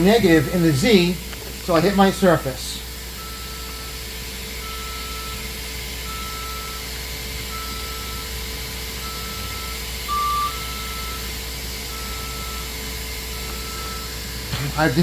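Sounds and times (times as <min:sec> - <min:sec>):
machine hum: 0:00.0 - 0:15.0
machine beeping: 0:03.2 - 0:04.0, 0:04.6 - 0:15.0.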